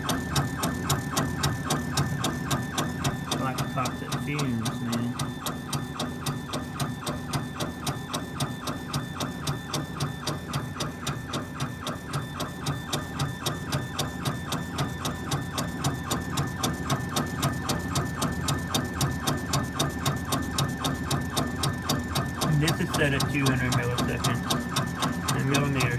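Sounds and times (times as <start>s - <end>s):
fan hum: 3.3s - 5.2s, 22.3s - 25.9s.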